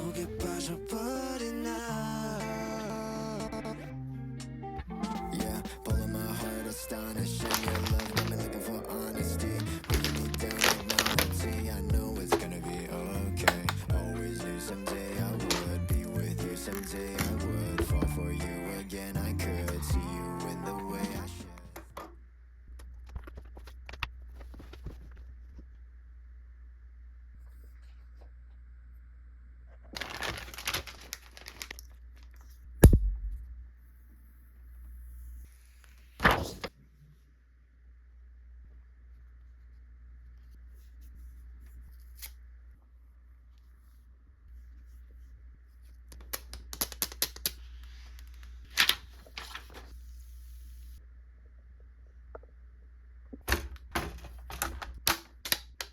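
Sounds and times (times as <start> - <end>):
packaging crinkling and tearing: 6.5 - 12.6, 14.7 - 15.8, 16.5 - 17.9, 29.8 - 32.6, 48.2 - 49.9
plastic crack: 7.3 - 12.7, 13.4 - 13.9, 14.8 - 15.9, 16.5 - 18.1, 29.8 - 33.0, 46.1 - 47.6, 53.4 - 55.9
loud thump: 32.8 - 33.5.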